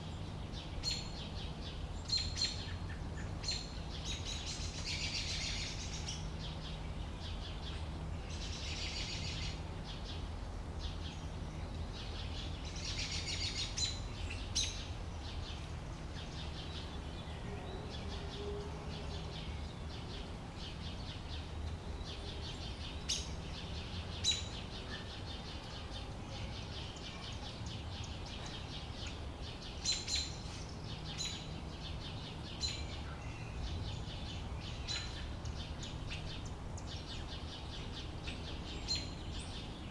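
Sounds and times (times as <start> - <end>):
songbirds trilling: 0.0 - 39.9.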